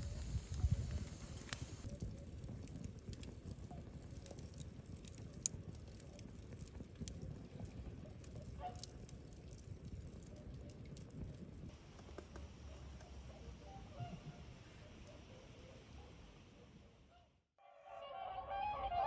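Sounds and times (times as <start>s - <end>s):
campfire crackling and popping: 0.0s - 12.5s.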